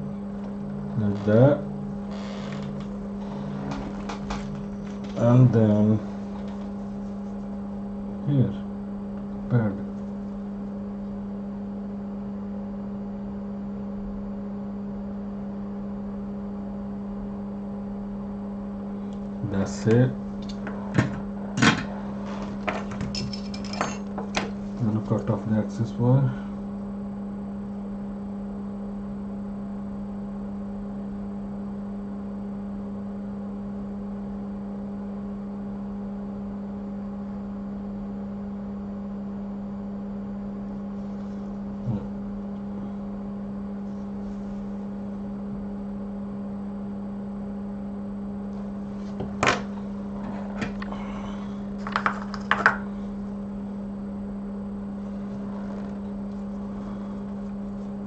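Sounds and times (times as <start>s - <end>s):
electrical equipment hum: 0.0s - 58.0s.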